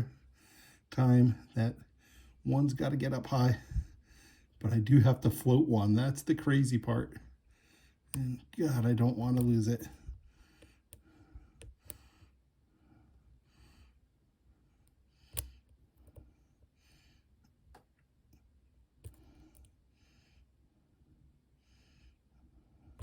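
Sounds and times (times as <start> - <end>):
soft breathing: 0.0 - 2.5, 3.5 - 4.7, 7.2 - 8.6, 9.8 - 17.6, 18.3 - 23.0.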